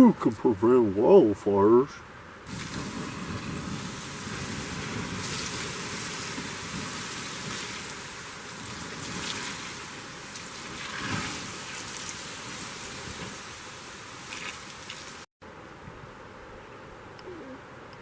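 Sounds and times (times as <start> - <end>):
water hissing on campfire: 2.5 - 15.3.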